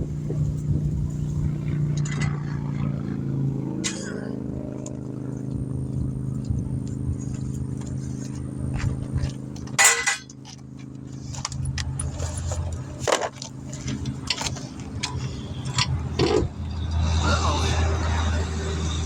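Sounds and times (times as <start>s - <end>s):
vehicle engine idling: 0.0s - 19.0s
metal tools clinking: 9.2s - 17.0s.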